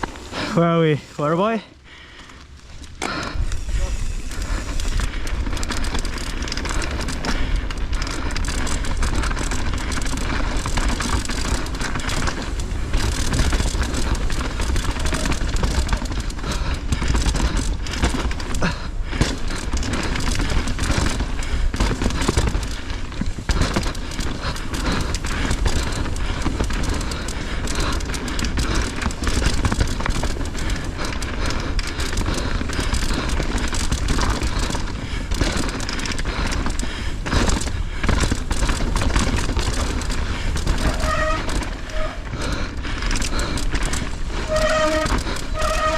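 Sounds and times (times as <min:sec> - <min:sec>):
bike rattling over bumps: 0:00.0 - 0:45.9
bike tyres rolling on dirt: 0:00.0 - 0:45.9.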